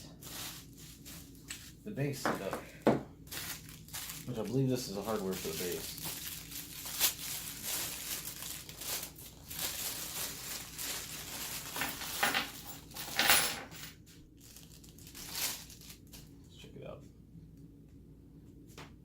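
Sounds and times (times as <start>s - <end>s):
plastic bag crinkling: 0.0s - 1.8s, 3.2s - 13.2s, 13.8s - 16.3s.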